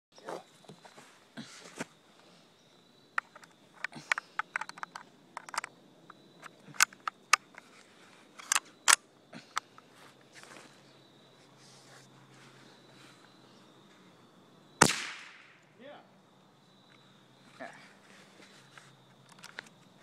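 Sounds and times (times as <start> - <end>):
rifle shots cracking: 14.8 - 15.6.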